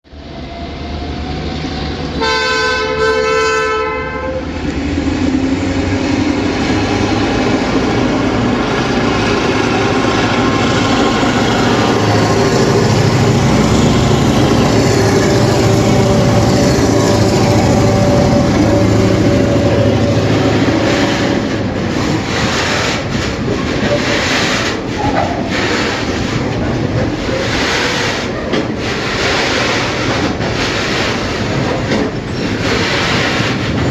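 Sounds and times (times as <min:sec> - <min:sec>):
diesel locomotive horn: 0:02.1 - 0:04.7, 0:09.5 - 0:22.2
diesel engines droning: 0:03.9 - 0:27.5
train wheels clattering over rails: 0:04.6 - 0:33.9.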